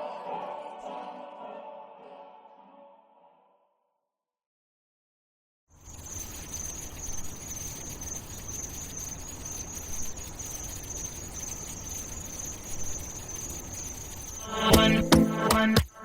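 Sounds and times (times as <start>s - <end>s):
insects chirring: 5.8s - 16.0s.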